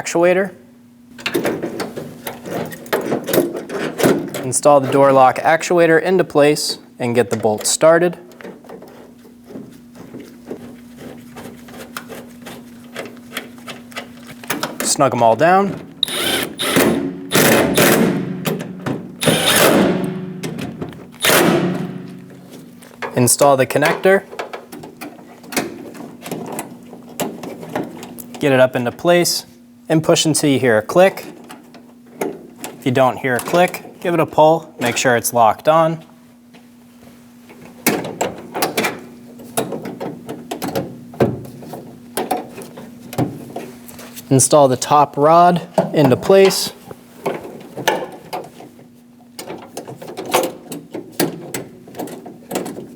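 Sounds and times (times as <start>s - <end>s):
power driver motor whine: 16.0s - 18.4s, 19.2s - 20.5s, 21.2s - 22.4s.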